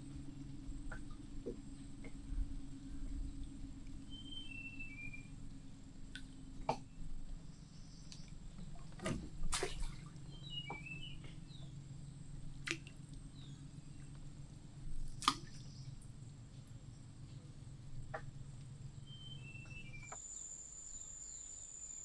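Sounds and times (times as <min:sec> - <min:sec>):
steady low hum: 0:00.0 - 0:22.0
water dripping and splashing: 0:08.0 - 0:11.8, 0:12.5 - 0:13.4, 0:14.1 - 0:17.3.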